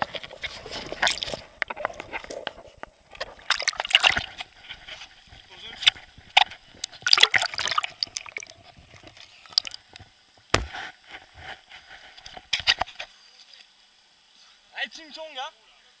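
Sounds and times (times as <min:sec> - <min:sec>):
water splashing and dripping: 0:01.0 - 0:02.4, 0:03.2 - 0:04.4, 0:06.3 - 0:10.0
heavy knock: 0:10.6 - 0:10.8.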